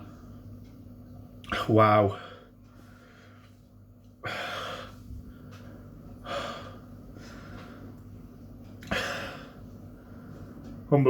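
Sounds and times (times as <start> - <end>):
man breathing heavily: 2.1 - 10.7.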